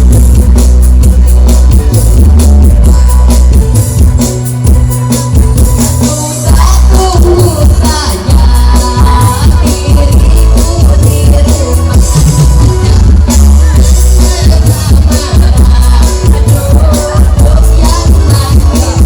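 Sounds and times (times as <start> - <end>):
live band music: 0.0 - 19.0
person singing: 6.0 - 19.0.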